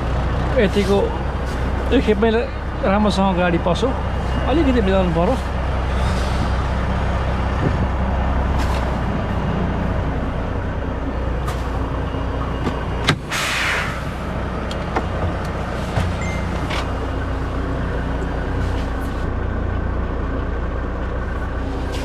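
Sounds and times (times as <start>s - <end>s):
diesel engine idling: 0.0s - 22.0s
air brake hiss: 13.3s - 14.2s.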